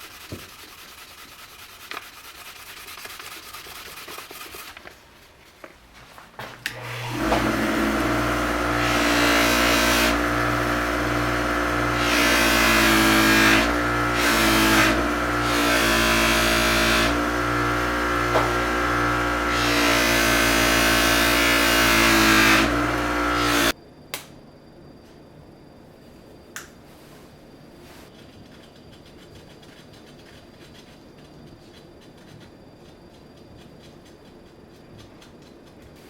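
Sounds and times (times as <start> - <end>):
electric grinder motor running: 6.7 - 23.8.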